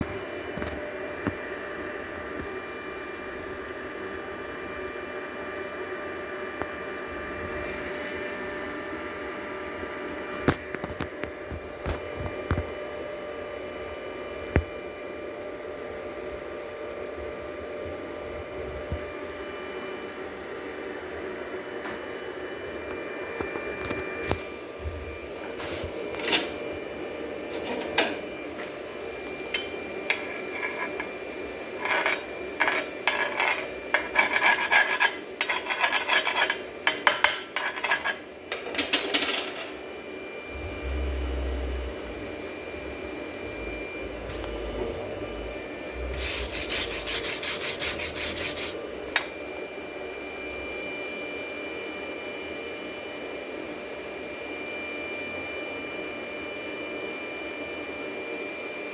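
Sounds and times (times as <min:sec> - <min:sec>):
steady background hum: 0:05.4 - 0:51.2.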